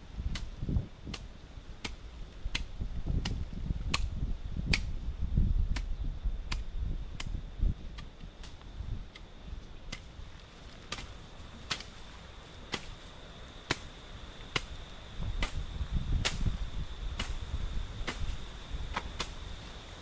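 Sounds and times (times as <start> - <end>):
chopping bush by hand: 0.2 - 5.0, 9.9 - 12.1, 12.7 - 19.5.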